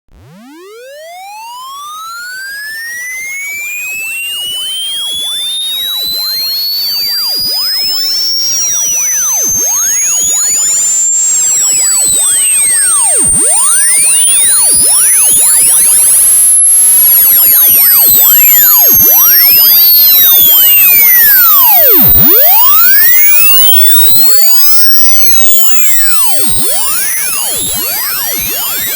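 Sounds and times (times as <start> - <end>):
electronic tone sweeping upward: 0.2 - 28.9
gliding electronic tones: 3.2 - 28.9.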